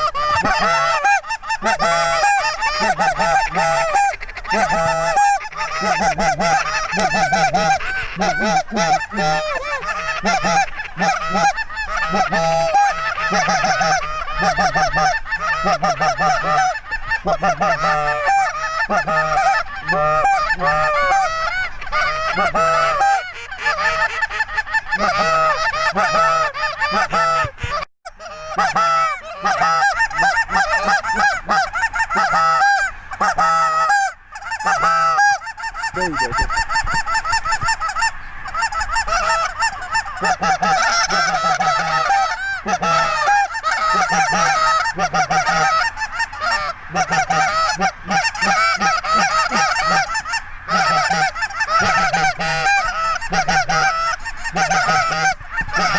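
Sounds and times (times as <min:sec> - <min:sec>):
geese honking: 0:00.0 - 0:55.9.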